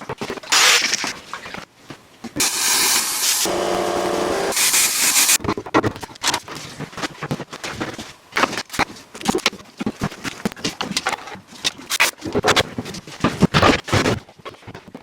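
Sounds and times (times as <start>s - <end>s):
loud steady hiss: 2.4s - 5.4s.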